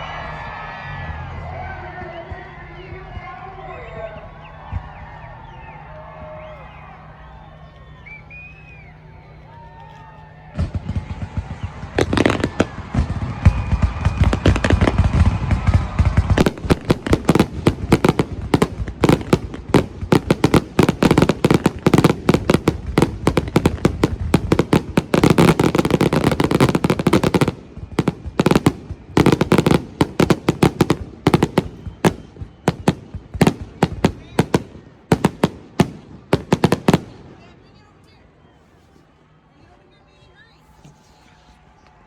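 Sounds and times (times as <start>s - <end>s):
heavy low rumble: 10.2s - 29.2s
fireworks bangs and crackles: 10.4s - 37.8s.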